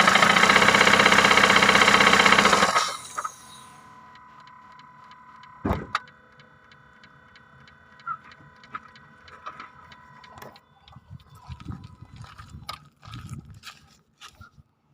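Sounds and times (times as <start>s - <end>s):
engine running with ticking knock: 0.0s - 3.7s, 4.4s - 14.3s
loud thump: 5.6s - 6.0s.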